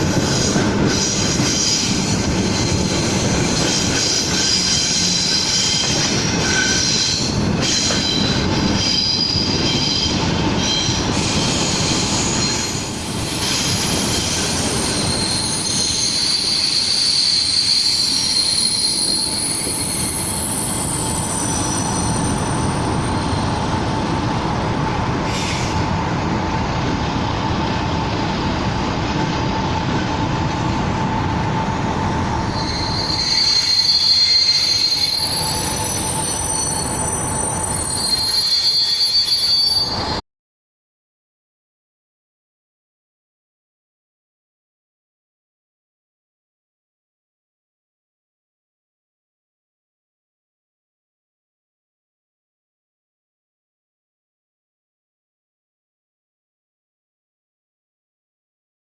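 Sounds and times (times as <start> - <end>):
train wheel and track noise: 0.0 - 40.2
high-pitched wheel squeal: 0.2 - 23.4, 32.5 - 40.2.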